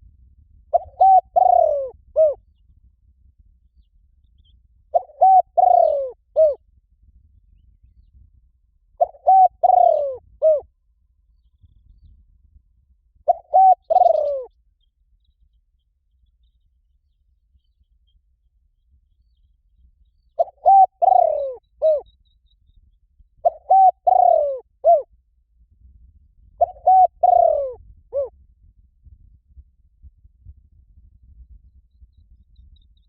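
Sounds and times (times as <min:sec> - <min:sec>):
dove cooing: 0:00.7 - 0:02.4, 0:04.9 - 0:06.6, 0:09.0 - 0:10.6, 0:13.3 - 0:14.5, 0:20.4 - 0:22.1, 0:23.4 - 0:25.1, 0:26.6 - 0:28.3.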